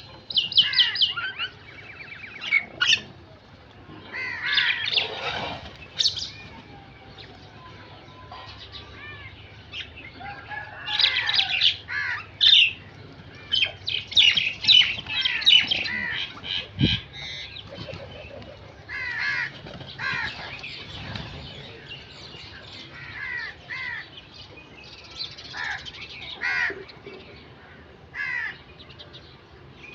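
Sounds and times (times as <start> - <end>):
crows cawing: 4.1 - 5.4, 10.3 - 12.7, 15.1 - 17.5, 18.9 - 20.7, 25.6 - 26.8, 28.2 - 28.6.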